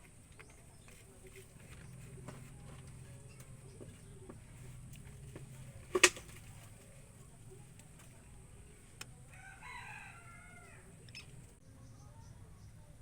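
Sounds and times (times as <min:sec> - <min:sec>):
rooster crowing: 0:09.3 - 0:11.0.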